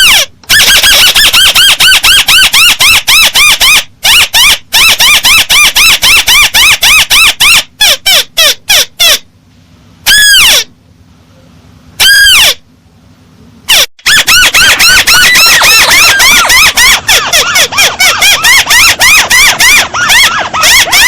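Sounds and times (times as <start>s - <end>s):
crake calling: 13.7s - 21.0s.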